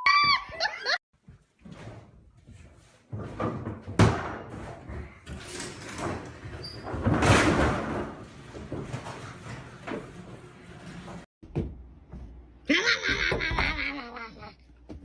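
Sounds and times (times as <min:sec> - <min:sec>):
knocks and thumps: 0:03.1 - 0:05.4, 0:11.4 - 0:12.4.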